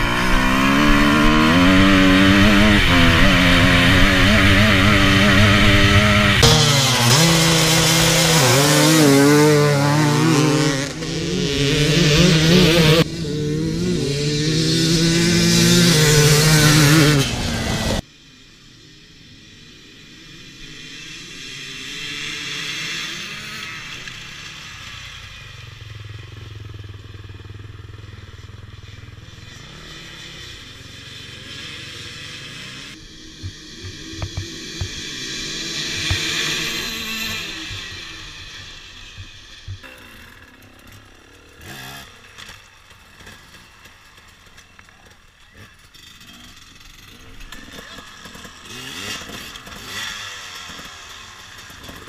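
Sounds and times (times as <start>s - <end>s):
dirt bike engine revving: 0.0s - 18.0s, 20.0s - 52.0s
distant engine: 0.0s - 52.0s.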